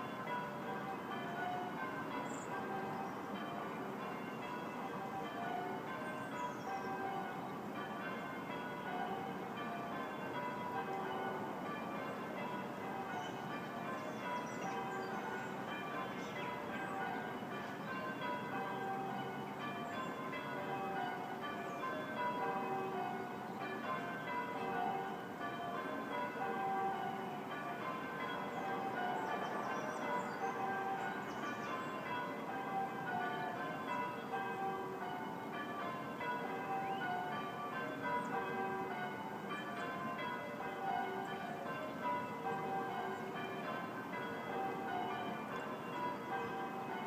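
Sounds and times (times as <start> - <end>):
church bells ringing: 0.0 - 47.0.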